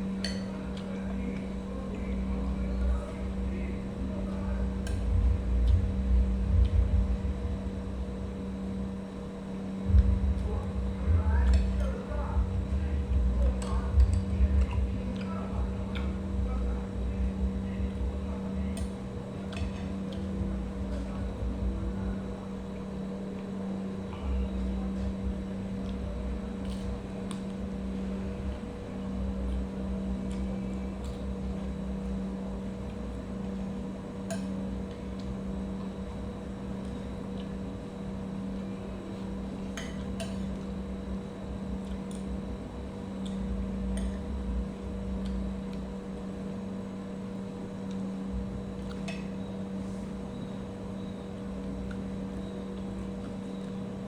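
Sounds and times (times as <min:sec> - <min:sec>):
steady hum: 0:00.0 - 0:54.0
low rumble: 0:04.4 - 0:08.4, 0:09.8 - 0:18.8.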